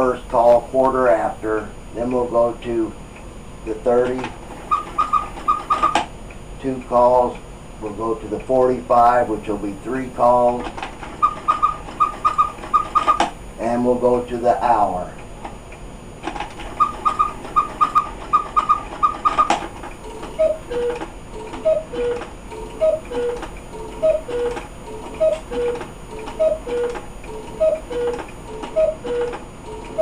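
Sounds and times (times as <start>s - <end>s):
cuckoo clock two-note call: 4.6s - 6.0s, 11.2s - 13.2s, 16.7s - 30.0s
quail high double notes: 16.7s - 21.0s, 21.6s - 29.3s.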